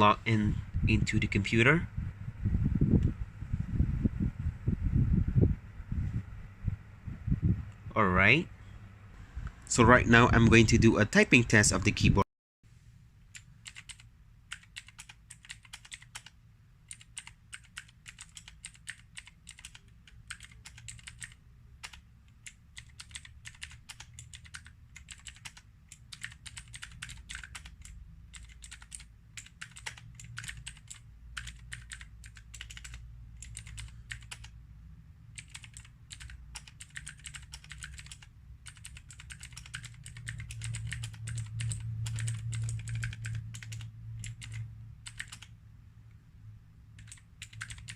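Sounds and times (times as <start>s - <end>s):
fast typing on clicky keyboard: 13.6s - 34.5s, 35.3s - 45.5s, 47.0s - 47.9s
low hum: 39.6s - 47.9s.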